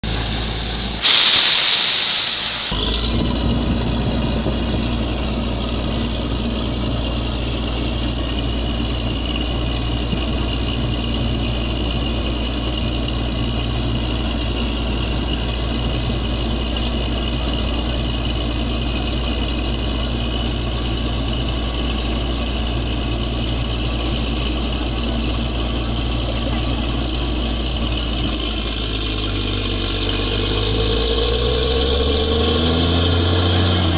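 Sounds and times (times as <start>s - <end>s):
loud hiss burst: 0.0s - 2.7s
drilling rig mechanical drone: 0.0s - 33.9s.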